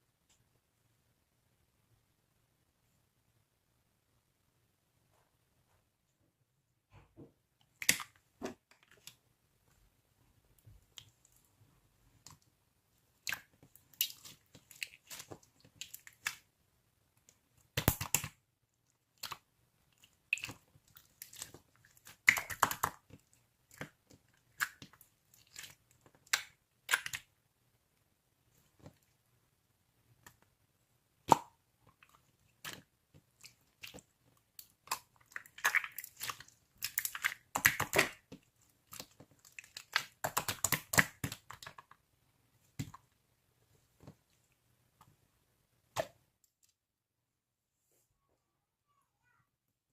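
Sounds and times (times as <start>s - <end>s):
slime crackling and popping: 20.2s - 27.3s, 34.6s - 41.8s.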